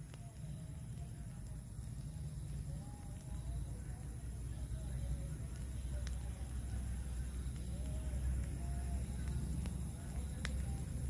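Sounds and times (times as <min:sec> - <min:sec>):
campfire burning: 0:00.0 - 0:11.0
fire crackle: 0:00.0 - 0:11.0.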